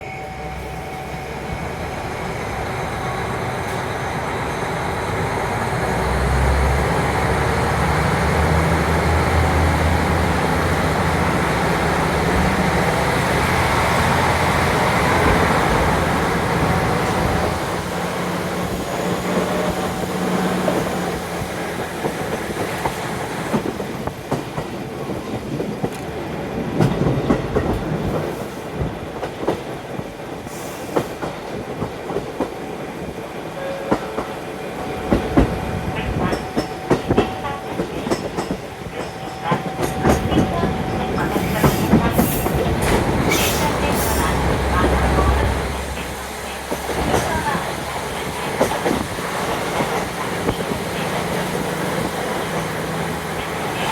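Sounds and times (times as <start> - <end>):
diesel railcar engine: 0.0 - 53.9
train wheels clicking over joints: 35.0 - 53.9.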